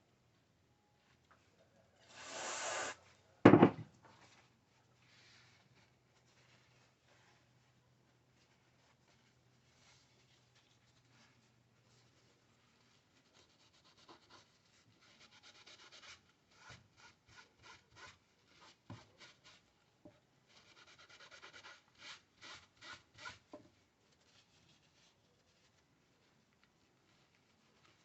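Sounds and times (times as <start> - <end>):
cloth rubbing strokes: 4.2 - 15.2.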